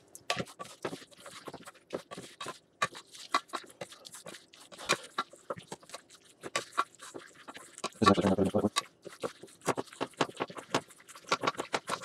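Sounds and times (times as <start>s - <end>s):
pasta stirred in sauce squelching: 0.0s - 12.0s.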